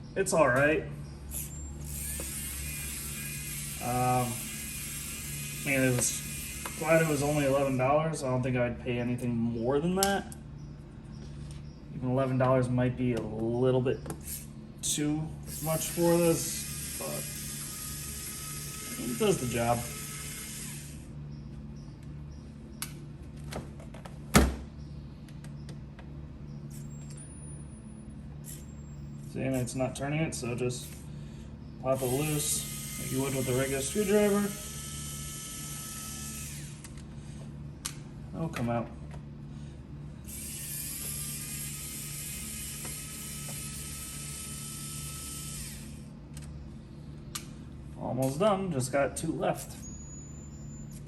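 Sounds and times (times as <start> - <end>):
electric screwdriver motor whirring: 1.3 - 7.8, 15.5 - 21.1, 32.0 - 37.1, 40.3 - 46.2
light clicks of small screws: 36.8 - 37.1.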